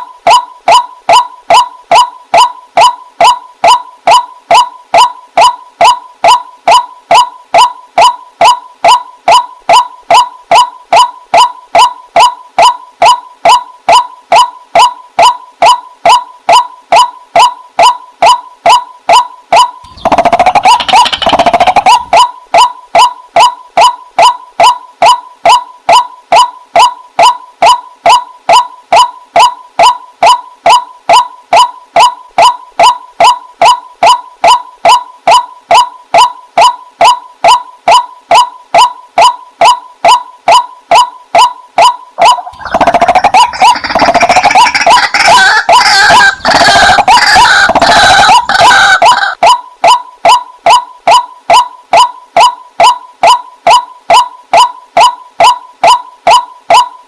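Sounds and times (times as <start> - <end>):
waterhen calling: 19.9 - 23.5, 41.8 - 50.4.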